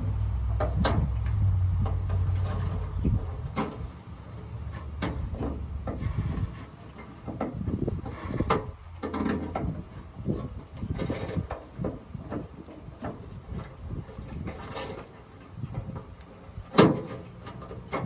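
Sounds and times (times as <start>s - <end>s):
low rumble: 0.0s - 6.5s
tailgate latch clicks and rattles: 16.6s - 18.0s.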